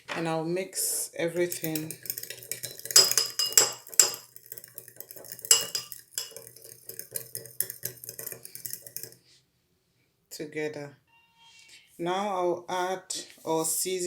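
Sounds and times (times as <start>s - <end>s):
utensil scraping mixing bowl: 0.8s - 9.2s.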